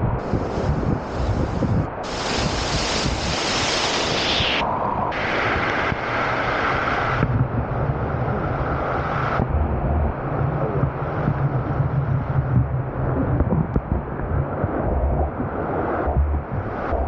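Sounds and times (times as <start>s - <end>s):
muffled underwater rumble: 0.0s - 17.0s
waterfall rushing: 2.0s - 7.2s.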